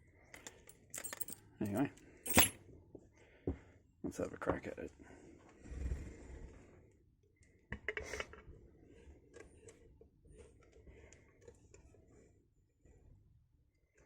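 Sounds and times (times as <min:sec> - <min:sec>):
lock-picking tools clicking and scraping: 0:00.4 - 0:01.4, 0:02.3 - 0:02.6
metallic clatter: 0:02.3 - 0:02.5.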